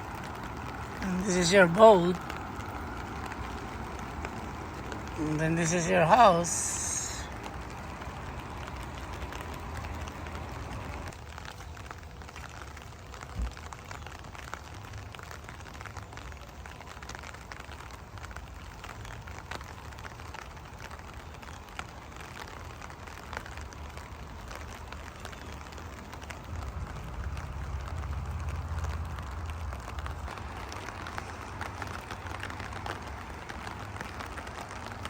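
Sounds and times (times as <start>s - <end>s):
rain drops ticking: 0.0s - 35.0s
low rumble: 26.4s - 33.5s.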